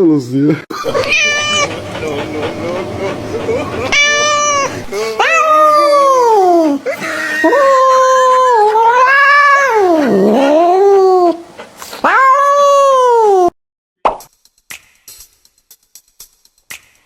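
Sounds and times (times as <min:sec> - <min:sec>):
cat yowling: 0:00.7 - 0:11.2, 0:12.0 - 0:13.4.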